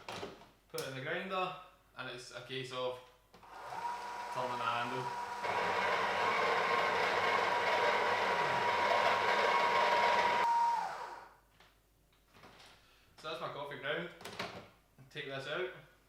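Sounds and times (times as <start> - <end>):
coffee grinder grinding beans: 3.4 - 11.2.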